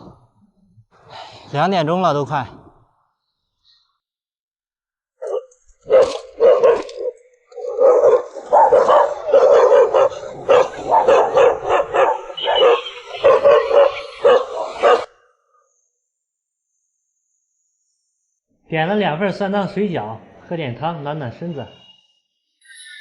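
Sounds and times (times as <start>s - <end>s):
dog barking: 5.2s - 15.1s.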